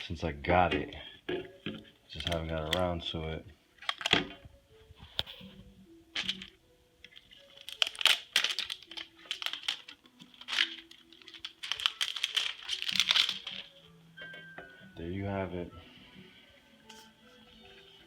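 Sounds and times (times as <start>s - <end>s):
packaging crinkling: 1.7s - 3.0s, 3.8s - 4.4s, 6.2s - 13.8s.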